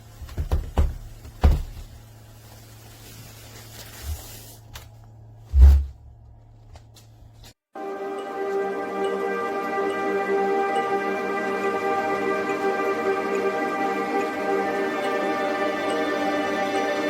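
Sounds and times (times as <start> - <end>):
dull knocks and thumps: 0.2 - 1.9.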